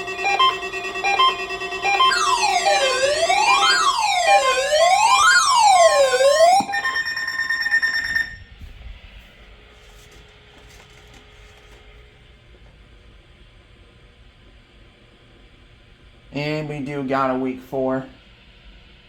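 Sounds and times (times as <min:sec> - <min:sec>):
steady high beep: 0:00.0 - 0:08.4
electronic siren wailing: 0:00.0 - 0:08.6.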